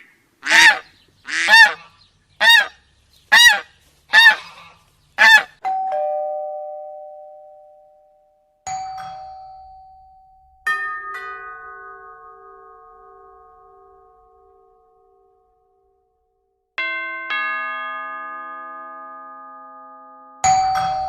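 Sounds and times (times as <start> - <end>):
goose honk: 0.0 - 5.6
bell-like chime ringing: 5.6 - 15.4, 16.8 - 21.0
two-note doorbell chime: 5.6 - 15.6, 16.8 - 21.0.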